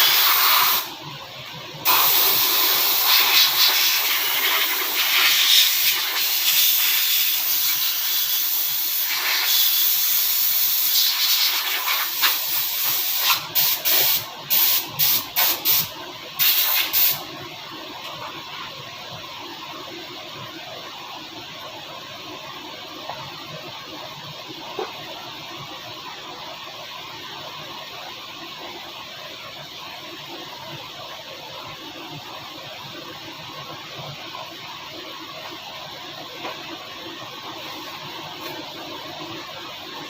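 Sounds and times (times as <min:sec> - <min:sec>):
nozzle spray bursts: 0:00.0 - 0:00.9, 0:01.8 - 0:17.2
pressurized air spray hissing: 0:00.0 - 0:00.9, 0:01.9 - 0:17.2.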